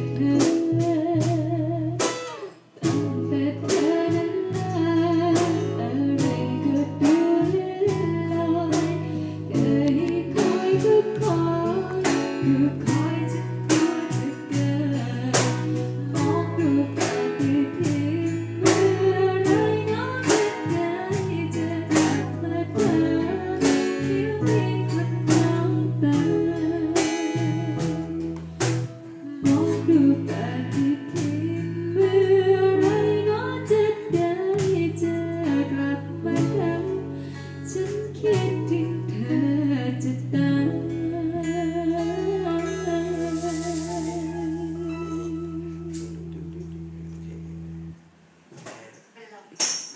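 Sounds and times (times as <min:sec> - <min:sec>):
woman singing: 0:00.0 - 0:02.2, 0:02.8 - 0:28.3, 0:29.2 - 0:46.8
drum beats: 0:00.0 - 0:31.6
bass notes: 0:00.0 - 0:48.5
guitar: 0:00.0 - 0:48.9.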